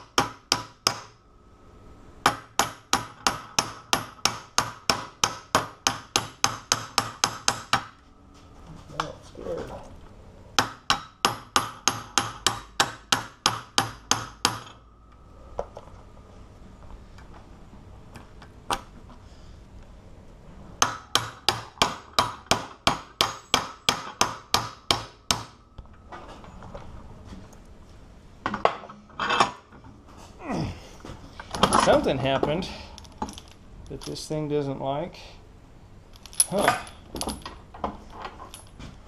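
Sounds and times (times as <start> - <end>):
hammer striking metal: 0.0 - 1.2, 2.2 - 8.0, 10.6 - 14.8, 20.8 - 25.6.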